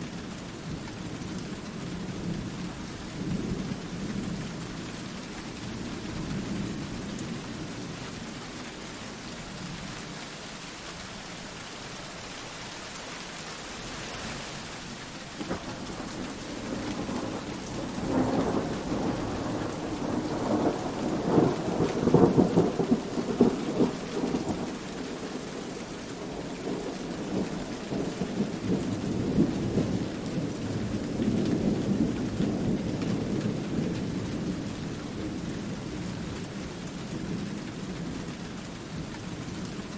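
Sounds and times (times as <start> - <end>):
steady rain: 0.0 - 39.9
thunder rumbling: 15.3 - 36.0.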